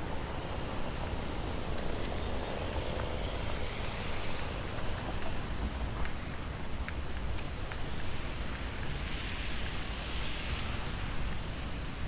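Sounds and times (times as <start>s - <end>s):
faint light ticks: 4.2s - 8.9s.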